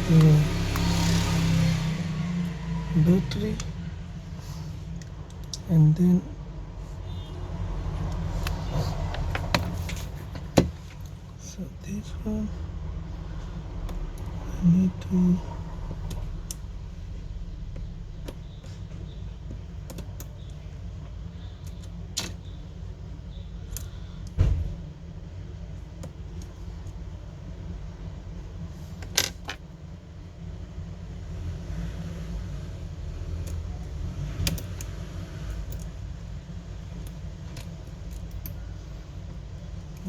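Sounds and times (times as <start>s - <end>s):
low rumble: 0.0s - 29.0s.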